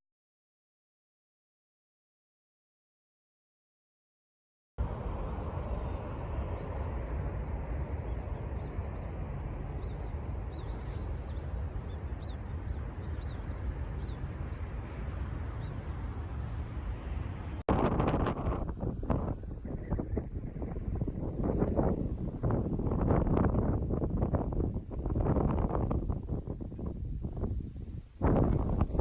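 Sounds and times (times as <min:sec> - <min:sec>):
wind rumble on microphone: 0:04.8 - 0:29.0
small birds chirping: 0:08.1 - 0:14.7.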